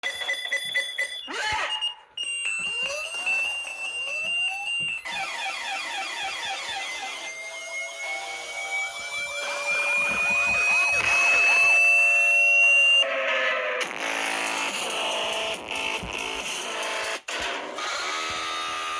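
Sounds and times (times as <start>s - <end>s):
fast warbling electronic chirps: 0.0s - 13.1s
rapid high electronic beeping: 0.0s - 13.1s
steady high alarm tone with chirps: 0.0s - 13.1s
rising siren-like tone: 2.6s - 13.0s.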